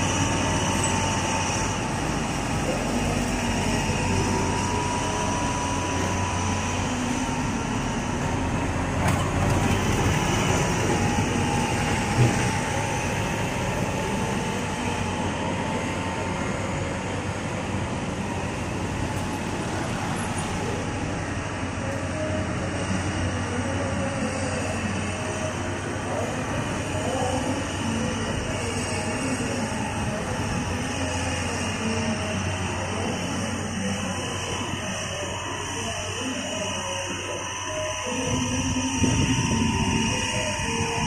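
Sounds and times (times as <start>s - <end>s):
heavy machinery running: 0.0s - 41.0s
faint steady whine: 10.1s - 41.0s.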